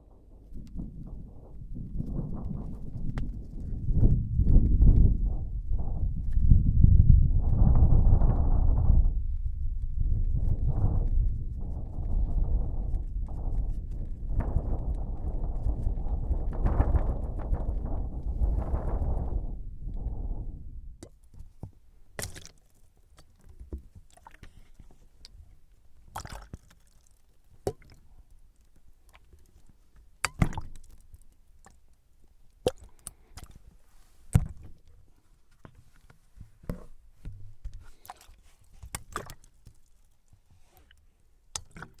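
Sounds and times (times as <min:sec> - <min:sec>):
low rumble: 0:00.0 - 0:21.0.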